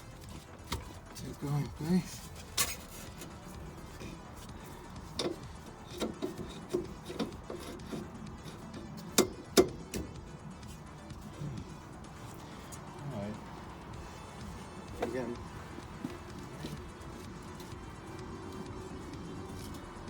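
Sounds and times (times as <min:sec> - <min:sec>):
background music: 0:00.0 - 0:20.0
knocks and clicks of tools: 0:00.2 - 0:01.2, 0:02.2 - 0:12.9.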